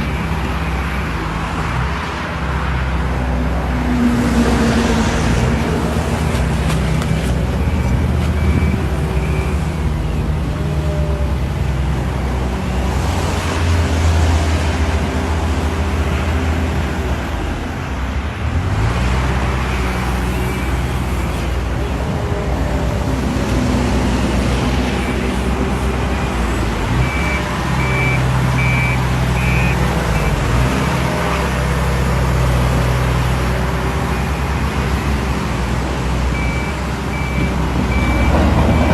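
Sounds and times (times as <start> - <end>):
heavy machinery engines running: 0.0 - 38.9
reversing alarm beeping: 7.6 - 10.2, 26.1 - 30.4, 36.3 - 38.9.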